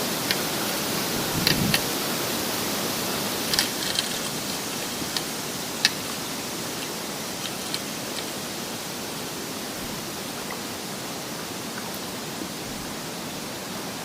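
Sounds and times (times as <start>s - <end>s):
wind buffeting microphone: 0.8s - 5.6s.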